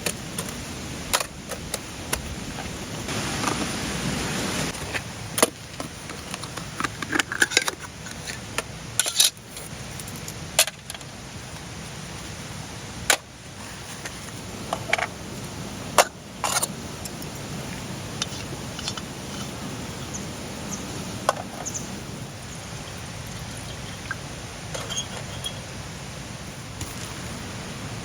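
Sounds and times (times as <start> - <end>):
steady rushing noise: 0.0 - 28.0
cookware clinking: 24.8 - 25.7.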